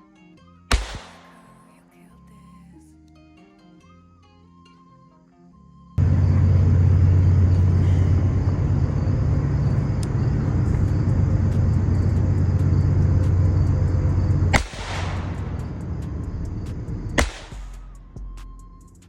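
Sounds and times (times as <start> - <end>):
gunshot crack: 0.7 - 1.5, 14.5 - 16.2, 17.2 - 17.9
loud low rumble: 6.0 - 18.2.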